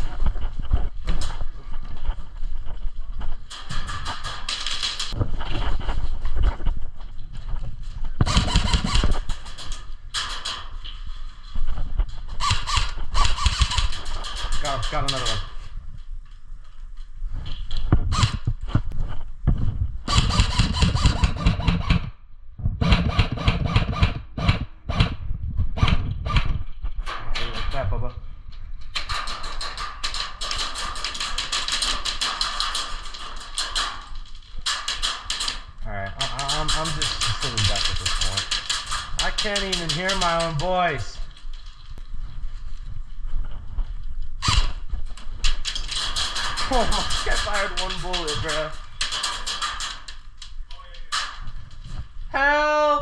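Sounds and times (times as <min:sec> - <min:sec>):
wind on microphone: 0:00.0 - 0:10.2, 0:17.2 - 0:30.2
airsoft gunfire rattle: 0:03.5 - 0:05.2, 0:08.2 - 0:10.8, 0:12.3 - 0:15.5, 0:20.1 - 0:22.1, 0:22.8 - 0:25.2, 0:28.9 - 0:40.8, 0:44.4 - 0:44.8, 0:45.4 - 0:51.6
airsoft guns firing: 0:08.2 - 0:09.7, 0:12.4 - 0:15.2, 0:20.1 - 0:22.1, 0:22.8 - 0:25.2, 0:36.2 - 0:40.6
handling rumble: 0:35.6 - 0:53.0.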